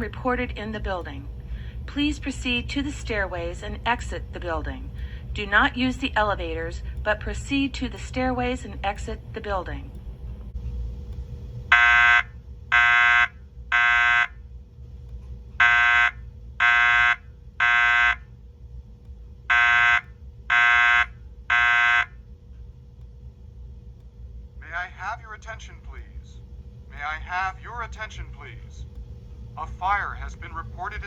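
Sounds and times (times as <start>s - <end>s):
faint steady hum: 0.0s - 31.0s
fire alarm buzzy horn beeps: 11.7s - 14.4s, 15.6s - 18.4s, 19.5s - 22.2s.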